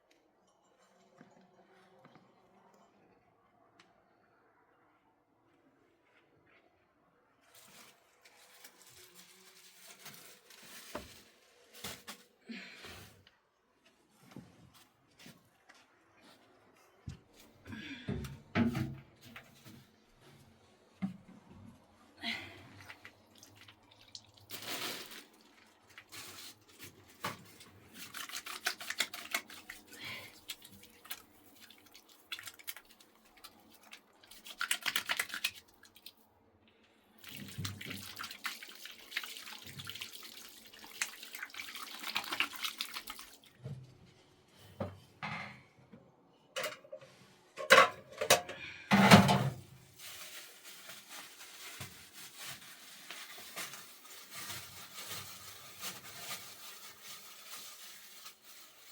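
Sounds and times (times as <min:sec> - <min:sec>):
water splashing and pouring: 0:22.8 - 0:36.2, 0:37.2 - 0:43.6.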